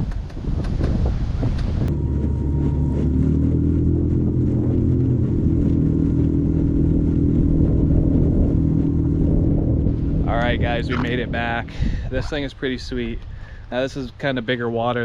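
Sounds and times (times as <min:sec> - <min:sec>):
small outboard motor running: 0:00.7 - 0:12.3.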